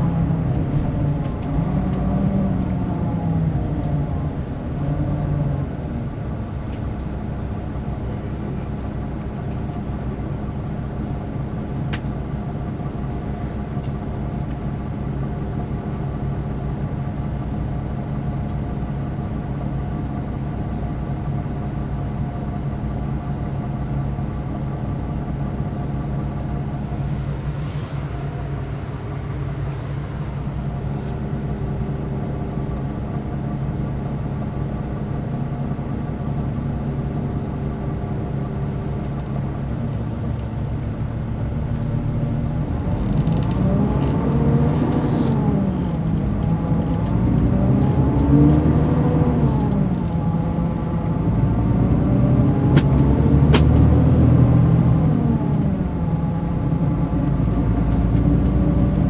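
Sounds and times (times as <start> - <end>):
diesel engine revving: 0.0 - 10.6, 26.0 - 59.0.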